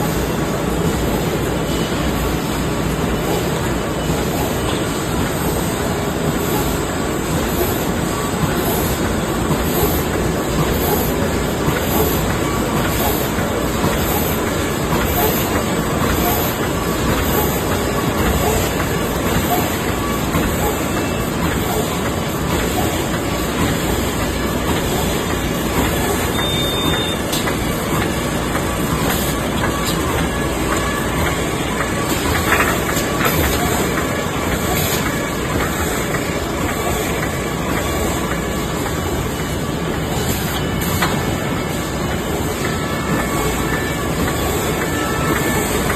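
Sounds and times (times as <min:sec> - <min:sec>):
bag-making machine clattering: 0:02.2 - 0:45.9.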